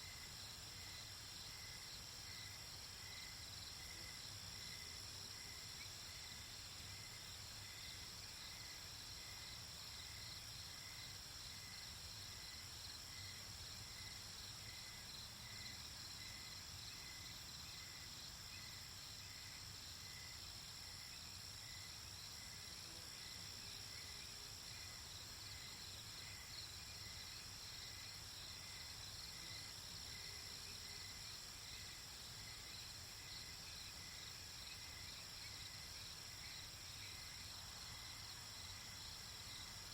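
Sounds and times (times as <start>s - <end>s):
crickets and insects chirping: 0.0s - 39.9s.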